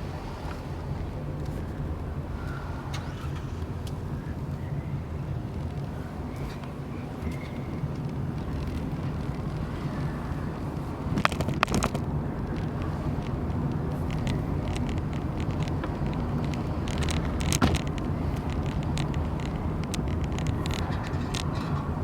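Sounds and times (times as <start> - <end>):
car engine and road noise: 0.0 - 22.0
sharp knocks or rattles: 14.2 - 21.8.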